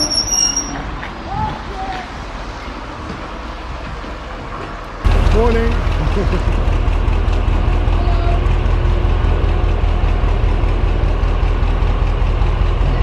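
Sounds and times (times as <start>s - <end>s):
diesel engine idling: 1.6s - 13.0s.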